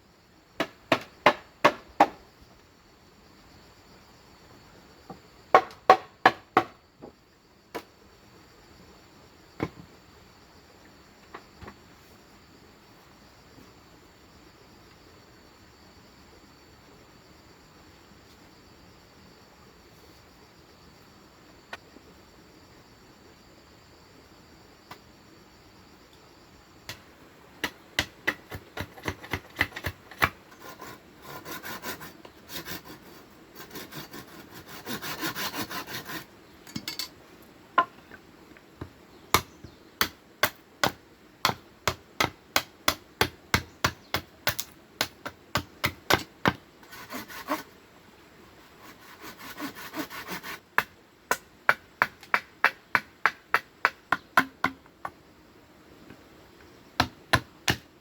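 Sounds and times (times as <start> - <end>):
insects chirring: 0.0 - 58.0
saw rasping through bamboo: 28.9 - 36.3, 46.8 - 47.8, 48.6 - 50.6.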